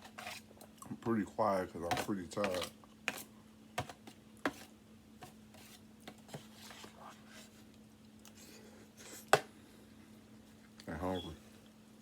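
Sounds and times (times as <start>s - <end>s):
steady faint hum: 0.0s - 12.0s
soft chewing and mouth noises: 6.3s - 11.8s.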